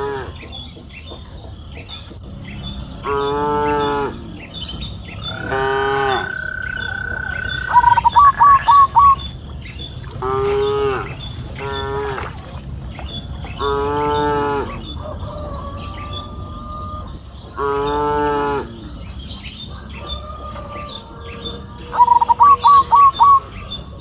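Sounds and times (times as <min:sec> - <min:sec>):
cows mooing: 0:00.0 - 0:00.5, 0:02.6 - 0:09.0, 0:10.2 - 0:12.3, 0:13.6 - 0:15.0, 0:15.7 - 0:19.3
bird singing: 0:00.0 - 0:24.0.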